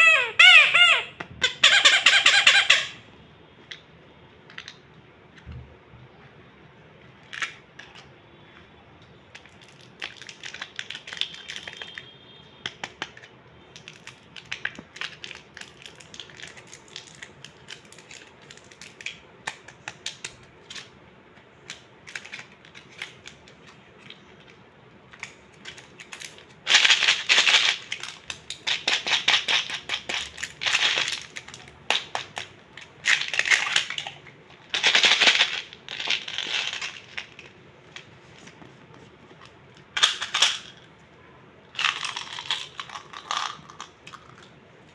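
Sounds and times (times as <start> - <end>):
plastic candy packaging crinkling: 9.3 - 12.1, 12.7 - 40.9, 41.7 - 44.5.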